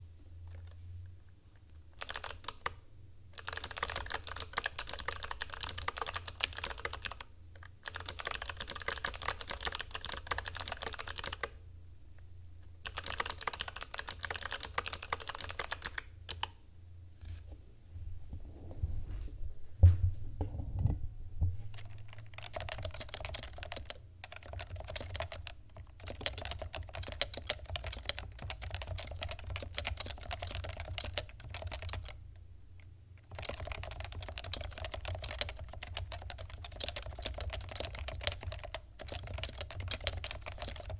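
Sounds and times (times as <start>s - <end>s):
deep dull keyboard typing: 1.6s - 11.6s, 12.8s - 16.6s, 20.4s - 32.2s, 33.2s - 40.9s
clicky keyboard typing: 2.0s - 2.8s, 3.4s - 11.6s, 12.8s - 16.6s, 21.8s - 32.2s, 33.2s - 40.9s
heavy thumps: 17.4s - 21.8s.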